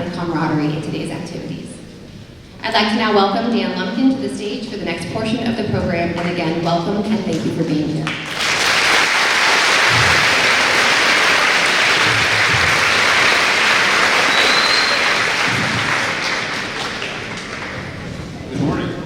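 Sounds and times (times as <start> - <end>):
large audience applauding: 8.0 - 18.5
brief high whistle: 14.3 - 15.2.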